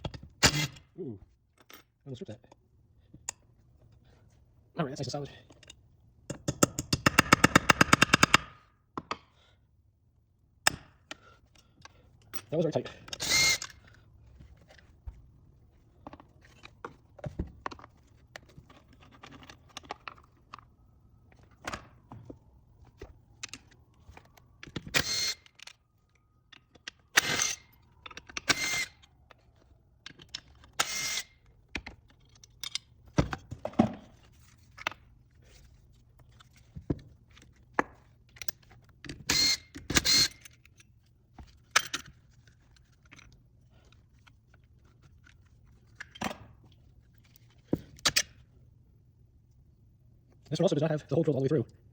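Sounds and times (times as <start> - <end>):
metal tools and parts clinking: 11.4 - 14.0, 38.3 - 43.4.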